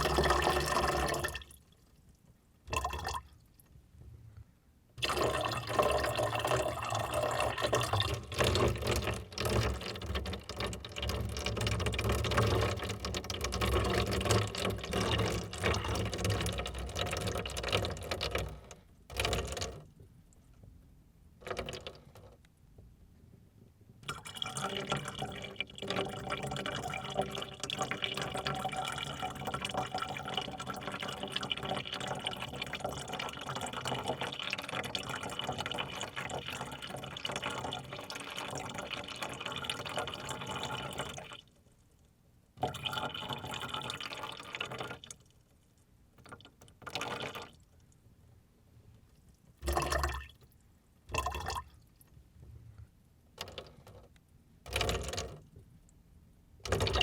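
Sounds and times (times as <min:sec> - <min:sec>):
water pouring into container: 0:00.0 - 0:01.8, 0:02.7 - 0:03.5, 0:05.0 - 0:19.8, 0:24.0 - 0:41.5, 0:42.6 - 0:47.8, 0:49.6 - 0:52.1, 0:54.7 - 0:55.4, 0:56.6 - 0:57.0
splashes of pouring: 0:00.0 - 0:01.9, 0:05.0 - 0:18.6, 0:24.0 - 0:41.4, 0:49.6 - 0:52.1.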